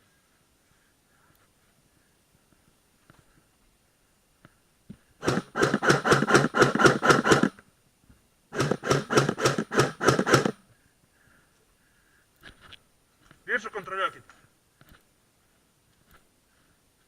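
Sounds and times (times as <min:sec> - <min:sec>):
airsoft gun firing bursts: 0:05.2 - 0:07.6, 0:08.5 - 0:10.6.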